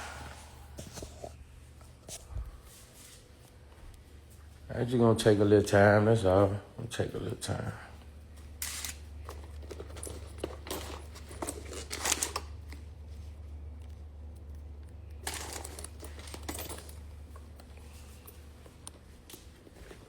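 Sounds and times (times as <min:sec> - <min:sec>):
steady low hum: 0:00.0 - 0:20.0
rustling and crinkling: 0:08.3 - 0:20.0.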